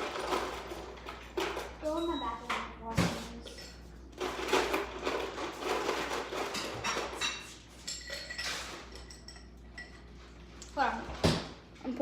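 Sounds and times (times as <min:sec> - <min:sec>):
dishes and utensils clattering: 0:00.0 - 0:10.6.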